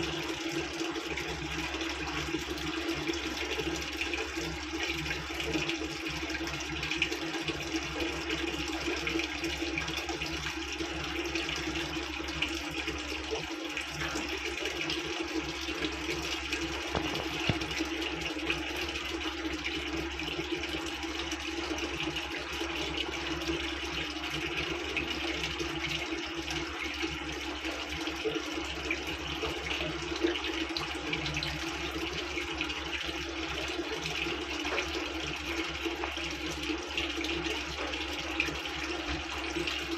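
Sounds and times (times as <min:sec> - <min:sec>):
water running into washing machine: 0:00.0 - 0:39.9.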